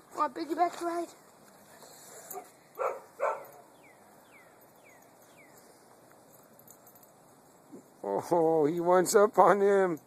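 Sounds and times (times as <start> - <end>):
puppy barking: 2.3 - 3.7.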